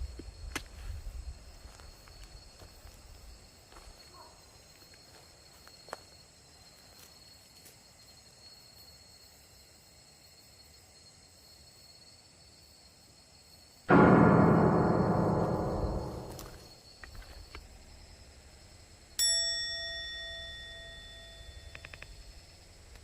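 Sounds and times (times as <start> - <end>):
high-pitched insect call: 17.9 - 23.0.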